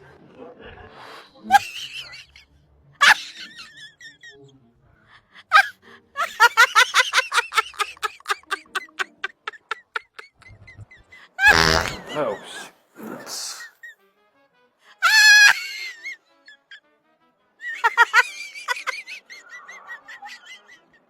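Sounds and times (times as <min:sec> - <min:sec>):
person laughing: 0:05.5 - 0:13.9, 0:15.0 - 0:16.7, 0:17.7 - 0:21.0.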